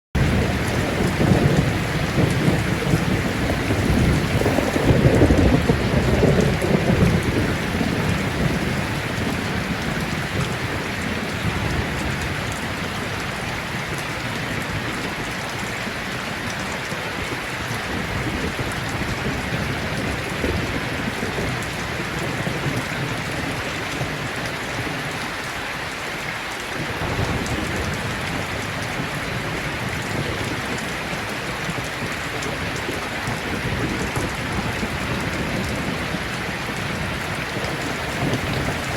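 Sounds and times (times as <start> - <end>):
low thunder rumble: 0.2 - 14.3, 32.0 - 38.9
steady rain falling: 0.2 - 38.9.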